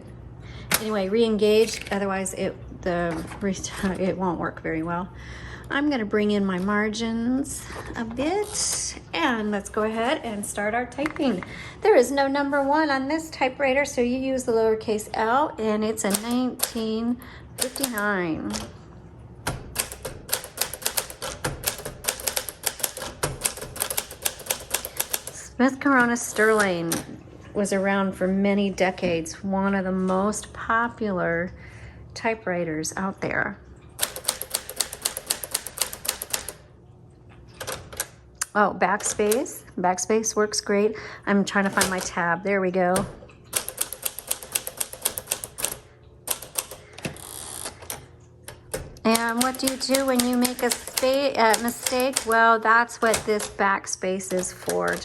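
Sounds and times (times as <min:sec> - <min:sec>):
manual typewriter typing: 0:15.9 - 0:18.8, 0:19.4 - 0:27.1, 0:34.0 - 0:36.7, 0:37.5 - 0:38.2, 0:38.9 - 0:39.5, 0:41.5 - 0:55.0.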